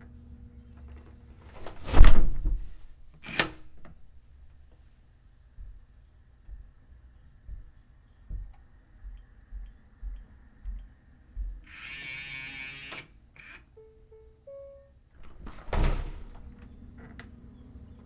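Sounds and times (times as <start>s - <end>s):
three-note electronic beep tune: 13.8s - 15.0s
latch releasing thunk: 15.2s - 16.6s.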